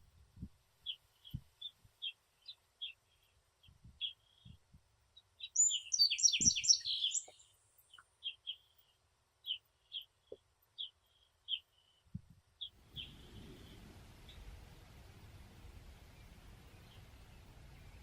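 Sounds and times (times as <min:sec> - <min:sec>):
small songbirds chirping: 0:00.0 - 0:18.0.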